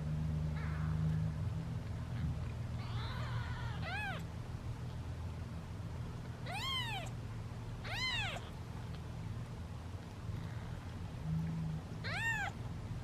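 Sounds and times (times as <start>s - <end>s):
steady low hum: 0.0s - 13.0s
kittens meowing: 2.8s - 4.3s, 6.4s - 7.2s, 7.8s - 8.6s, 12.0s - 12.6s.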